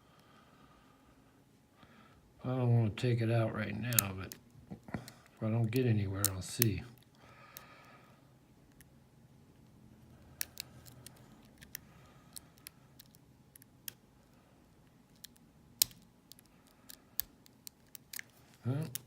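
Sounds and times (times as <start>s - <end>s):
lock picking metallic clicks: 3.9s - 4.4s, 5.3s - 7.1s, 10.3s - 14.0s, 15.1s - 19.0s.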